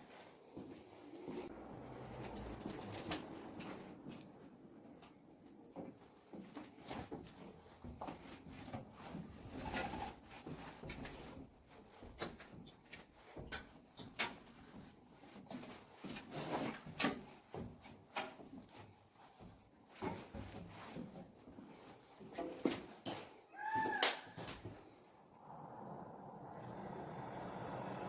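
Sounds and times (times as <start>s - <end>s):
footsteps on debris-strewn floor: 5.0s - 24.8s
rustling scrape: 15.2s - 17.4s.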